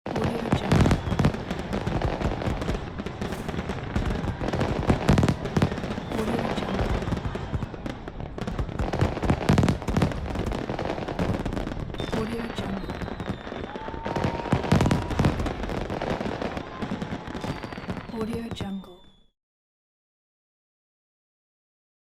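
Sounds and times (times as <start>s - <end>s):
fireworks crackling: 0.1s - 19.1s
fireworks booming: 0.1s - 19.2s
crowd voices: 0.2s - 17.5s.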